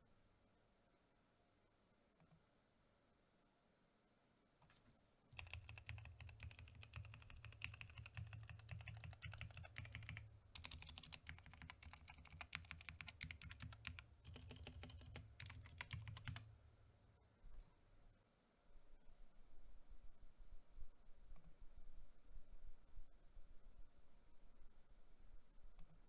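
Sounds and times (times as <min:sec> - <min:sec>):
mechanical keyboard typing: 0:05.4 - 0:16.5.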